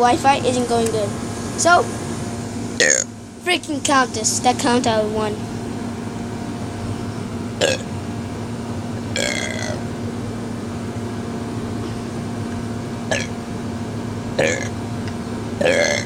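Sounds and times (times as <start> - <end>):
steady low hum: 0.0 - 16.0
person burping: 2.8 - 3.1, 7.6 - 7.9, 9.2 - 9.8, 13.1 - 13.3, 14.4 - 14.7, 15.6 - 16.0.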